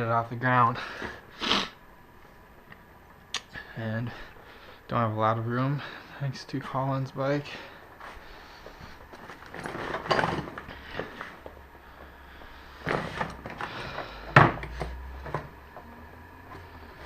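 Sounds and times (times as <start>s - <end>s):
knocks and clunks of handling: 9.1s - 11.6s, 12.8s - 15.9s.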